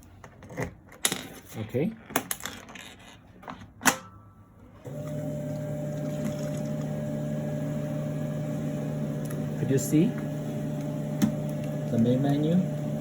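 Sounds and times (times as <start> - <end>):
machine cooling hum: 4.8 - 13.0.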